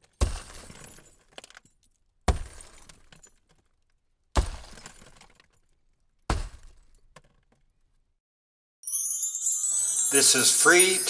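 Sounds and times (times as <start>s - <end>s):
car window glass smashing: 0.2s - 1.2s, 2.3s - 3.2s, 4.4s - 5.3s, 6.3s - 7.2s
glass pieces tinkling: 8.8s - 11.0s.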